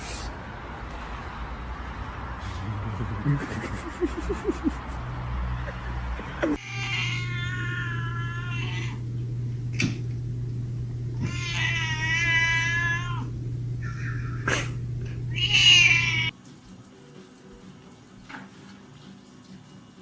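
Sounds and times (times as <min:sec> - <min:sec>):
cat yowling: 0:06.6 - 0:09.1, 0:11.1 - 0:16.3
steady low hum: 0:07.0 - 0:16.3.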